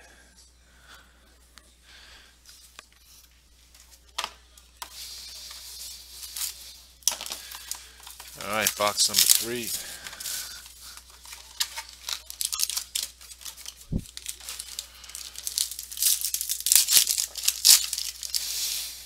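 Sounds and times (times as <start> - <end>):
plastic wrapping crinkling: 4.8 - 19.0.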